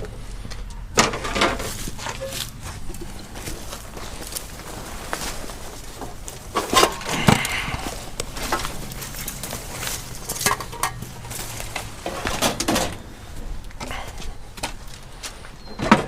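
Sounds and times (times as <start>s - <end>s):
scrap steel knocks and clanks: 0.0s - 4.4s, 5.2s - 13.1s.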